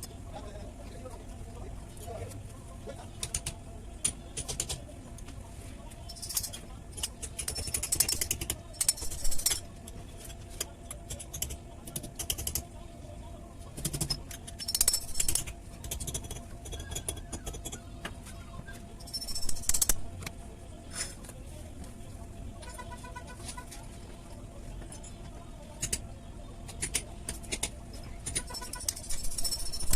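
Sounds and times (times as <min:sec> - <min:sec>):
metal tools clinking and rattling: 0:06.1 - 0:09.6, 0:19.0 - 0:20.0, 0:28.0 - 0:29.9.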